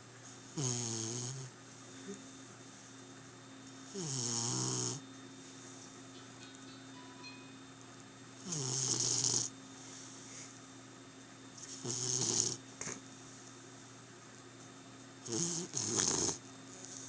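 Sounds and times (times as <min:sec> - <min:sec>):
faint steady hum: 0:00.0 - 0:17.0
rasping snores: 0:00.6 - 0:01.5, 0:03.9 - 0:05.0, 0:08.4 - 0:09.5, 0:11.7 - 0:13.0, 0:15.2 - 0:16.4.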